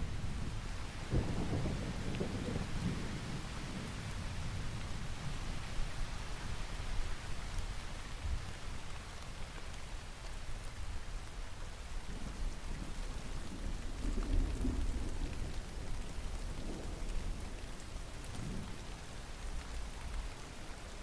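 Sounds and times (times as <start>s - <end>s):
distant thunder rumbling: 0.0s - 5.1s
rain hissing and pattering: 0.0s - 21.0s.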